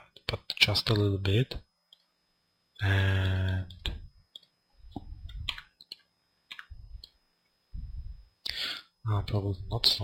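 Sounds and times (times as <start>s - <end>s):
computer mouse clicks: 3.2s - 7.2s.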